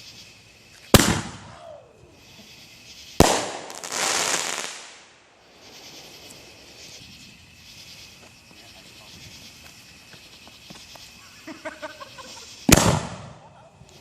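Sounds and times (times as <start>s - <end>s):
firework crackling: 0.9s - 1.6s, 3.0s - 8.2s, 12.2s - 14.0s
firework bangs: 0.9s - 1.8s, 3.2s - 7.1s, 12.6s - 13.5s.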